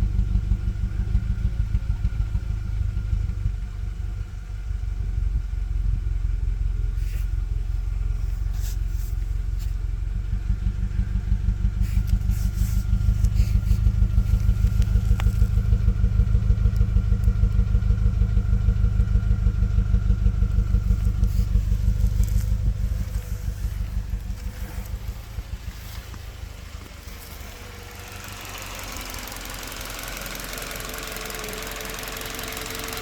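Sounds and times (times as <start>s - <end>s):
car engine pulsing throb: 0.0s - 33.0s
faint steady engine whine: 0.0s - 33.0s.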